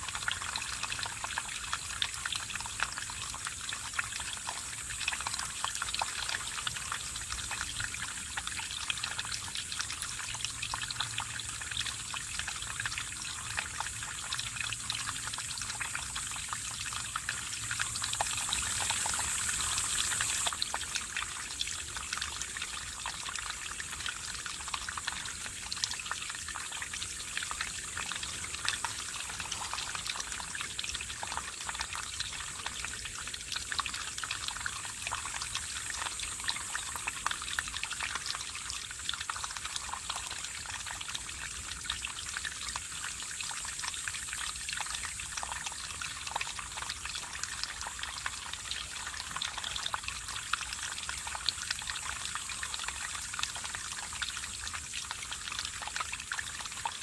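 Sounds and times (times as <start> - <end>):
stream running over rocks: 0.0 - 57.0
high hiss: 18.0 - 20.5.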